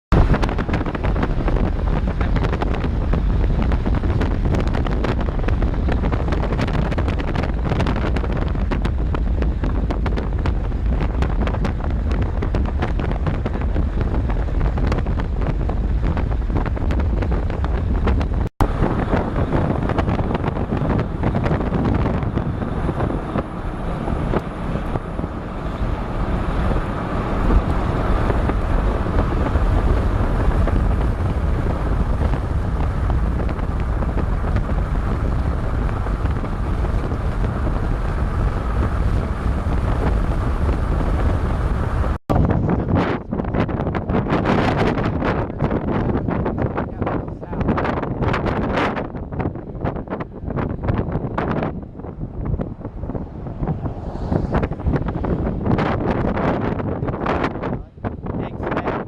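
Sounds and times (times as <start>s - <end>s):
constant low rumble: 0.1s - 59.0s
storm wind: 0.1s - 59.0s
wind buffeting microphone: 0.1s - 59.0s.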